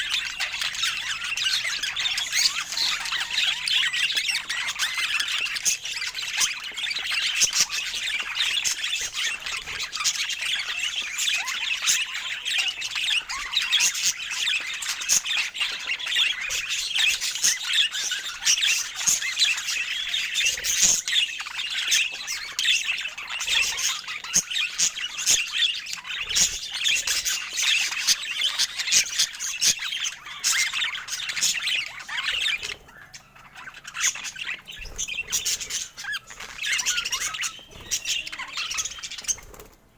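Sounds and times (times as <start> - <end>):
budgerigars chattering and squawking: 0.0 - 39.9.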